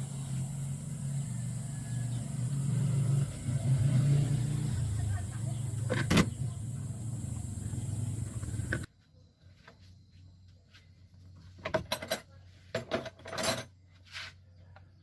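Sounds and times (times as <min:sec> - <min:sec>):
car engine idling: 0:04.8 - 0:08.9.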